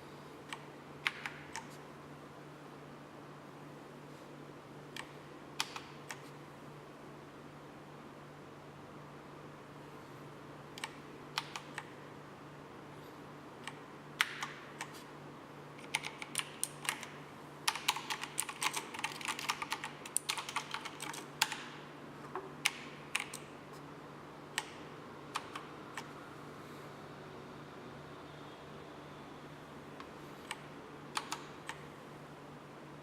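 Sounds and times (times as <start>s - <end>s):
faint steady hum: 0.0s - 33.0s
mechanical keyboard keystrokes: 15.8s - 17.1s, 17.7s - 21.7s, 22.6s - 23.5s, 30.5s - 31.8s.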